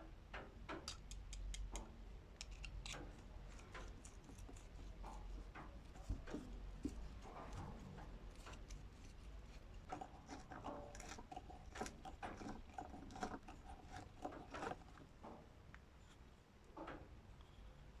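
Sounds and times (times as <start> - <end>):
hand tool scraping and rubbing: 8.3 - 15.0.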